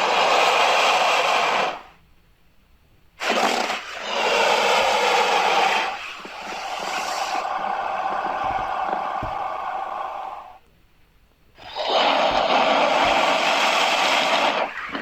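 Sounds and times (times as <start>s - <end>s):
creature harsh raspy hisses: 3.2s - 10.6s, 11.6s - 15.0s.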